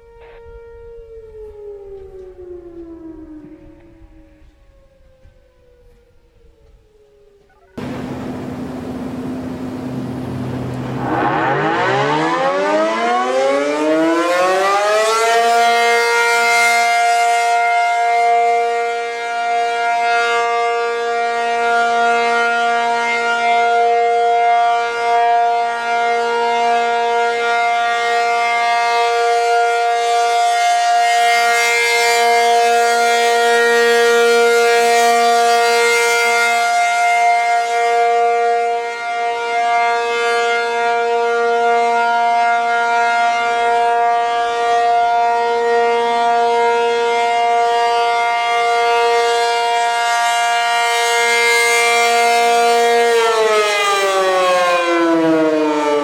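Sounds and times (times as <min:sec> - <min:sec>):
tornado siren winding up: 0:00.0 - 0:19.6.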